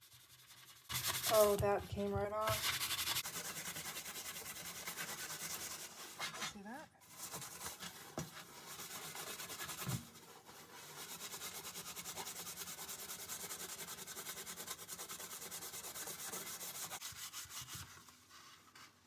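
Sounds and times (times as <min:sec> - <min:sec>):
hand scrubbing strokes: 0:00.0 - 0:19.0.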